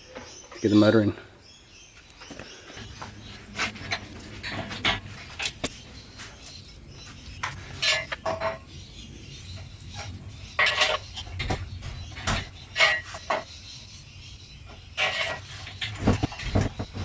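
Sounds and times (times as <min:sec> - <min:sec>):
metal clanking with ring: 0:07.8 - 0:08.7.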